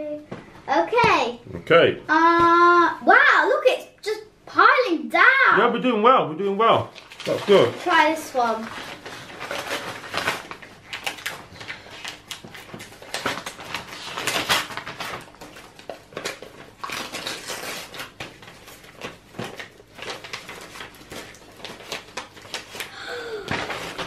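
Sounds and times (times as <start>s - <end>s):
parcel wrapping torn and crinkled: 6.9s - 24.0s.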